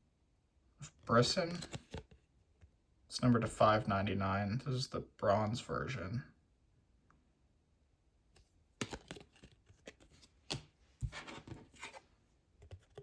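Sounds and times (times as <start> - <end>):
cards scraping and tapping: 1.2 - 2.2, 8.4 - 13.0.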